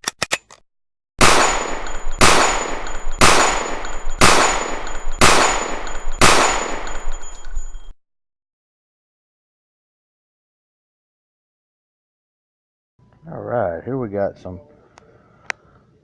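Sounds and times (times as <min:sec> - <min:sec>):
loud gunshots: 0:01.2 - 0:07.3
high metallic ring: 0:01.5 - 0:07.9.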